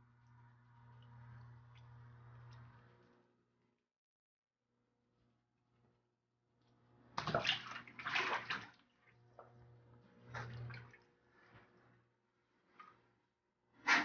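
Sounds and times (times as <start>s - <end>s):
low steady hum: 0.0s - 3.4s
water splashing and sloshing: 7.2s - 11.8s, 12.6s - 13.2s.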